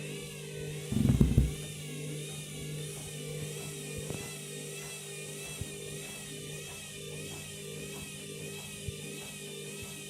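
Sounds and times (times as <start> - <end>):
washing machine motor whine: 0.0 - 10.0.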